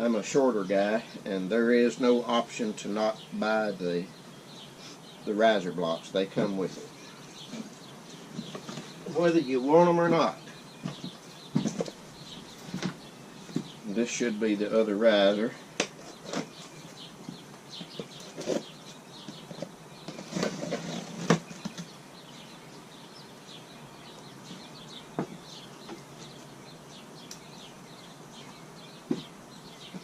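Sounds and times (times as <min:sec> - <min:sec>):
cardboard box rustling: 0:17.8 - 0:21.9
knocks on cardboard box: 0:25.2 - 0:25.4, 0:29.1 - 0:29.3.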